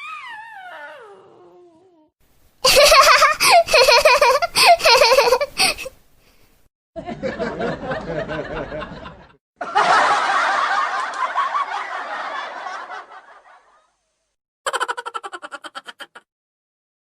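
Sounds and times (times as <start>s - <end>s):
laugh sound effects: 2.6s - 5.9s, 14.7s - 16.3s.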